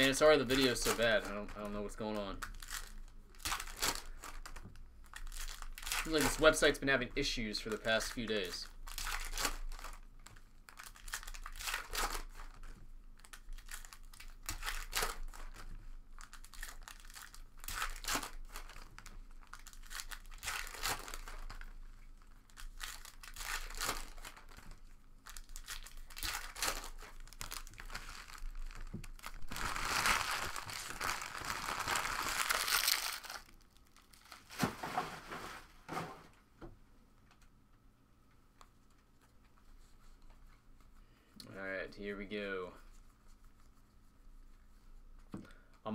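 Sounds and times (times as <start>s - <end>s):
card pack wrappers crinkling: 0.0s - 6.7s, 7.6s - 34.6s
long wrapper rip: 16.2s - 21.6s, 22.4s - 24.6s, 25.3s - 34.4s.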